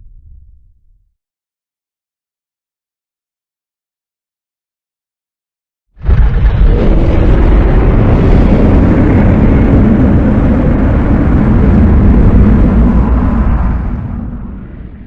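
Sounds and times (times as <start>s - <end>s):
loud deep rumbling blast: 6.0s - 15.0s.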